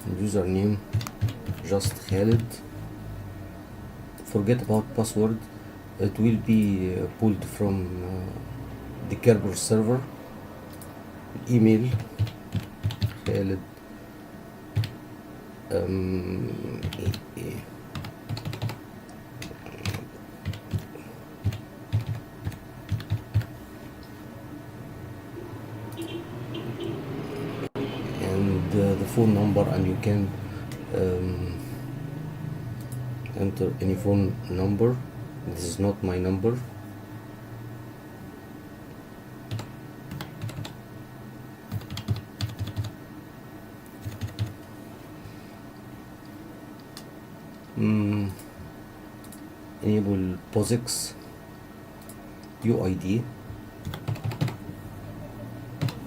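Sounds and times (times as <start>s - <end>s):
typing on computer keyboard: 0.9s - 2.5s, 11.9s - 13.4s, 14.8s - 15.0s, 16.8s - 17.2s, 17.9s - 18.8s, 19.4s - 23.5s, 39.5s - 40.8s, 41.7s - 42.9s, 44.0s - 44.6s, 53.8s - 54.6s, 55.8s - 56.0s.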